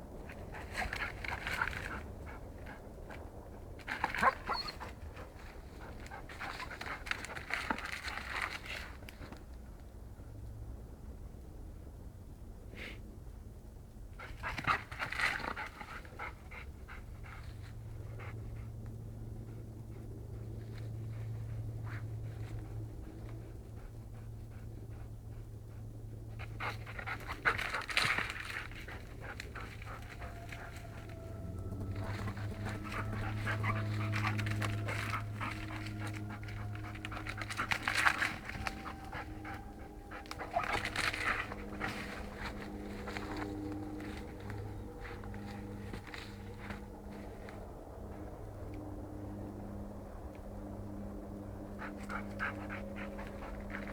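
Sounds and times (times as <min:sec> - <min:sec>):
low hum: 0:00.0 - 0:53.9
dog panting: 0:03.9 - 0:08.8, 0:14.2 - 0:48.2, 0:51.4 - 0:53.9.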